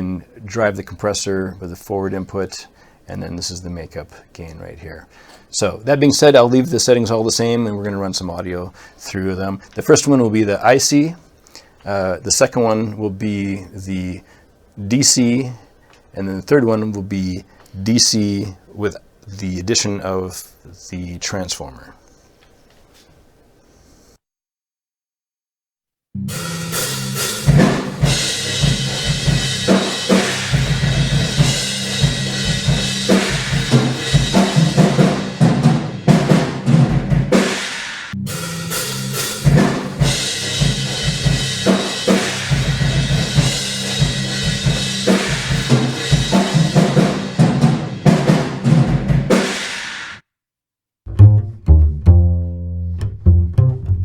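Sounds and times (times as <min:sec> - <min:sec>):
drum kit groove: 0:26.2 - 0:50.2, 0:51.1 - 0:54.0.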